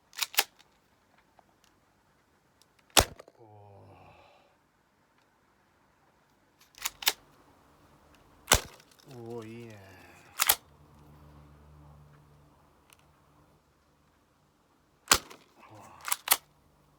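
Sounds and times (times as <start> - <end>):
pistol clicks: 0.2 - 0.6, 2.9 - 3.3, 6.6 - 7.2, 8.5 - 9.1, 10.4 - 10.6, 15.1 - 16.5
airsoft pistol shot: 3.0 - 3.2, 8.5 - 8.8, 15.1 - 15.4.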